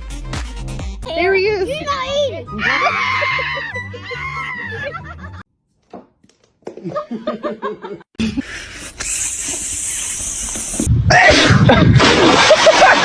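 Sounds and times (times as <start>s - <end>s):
music with steady beat: 0.0s - 1.2s.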